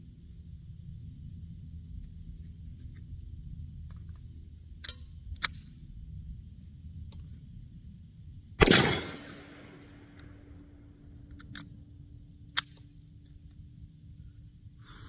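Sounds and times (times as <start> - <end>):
pistol shot with echo: 8.6 - 10.1
sharp clicks: 11.2 - 11.8.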